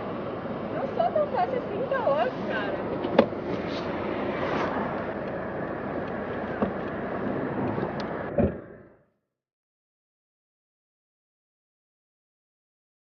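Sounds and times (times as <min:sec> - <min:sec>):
street traffic noise: 0:00.0 - 0:09.1
sharp thump: 0:08.3 - 0:08.7.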